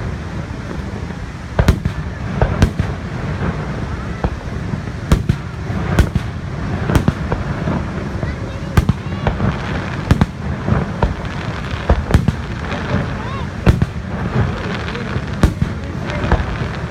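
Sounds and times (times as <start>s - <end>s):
crowd chatter: 0.0s - 16.9s
fireworks bangs: 0.0s - 16.9s.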